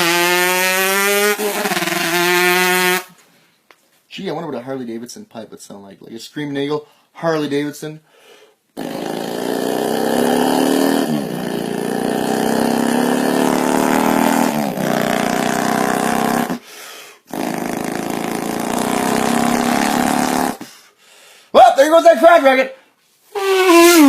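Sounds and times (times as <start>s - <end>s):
man imitating motorcycle engine: 0.0s - 3.1s, 8.8s - 16.6s, 17.3s - 20.6s, 23.4s - 24.0s.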